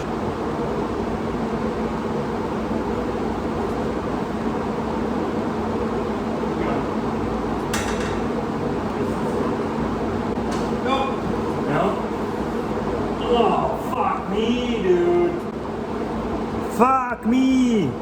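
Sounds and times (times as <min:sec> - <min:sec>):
mechanical hum and hiss: 0:00.0 - 0:18.0.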